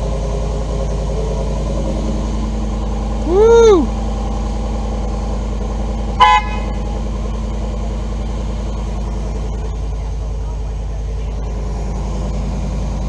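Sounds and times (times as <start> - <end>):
truck engine idling: 0.0 - 13.0
car horn toot: 6.1 - 7.1.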